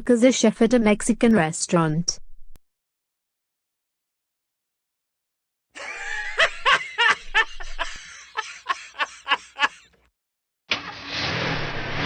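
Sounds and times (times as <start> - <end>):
cartoon character laughing: 5.8 - 9.9.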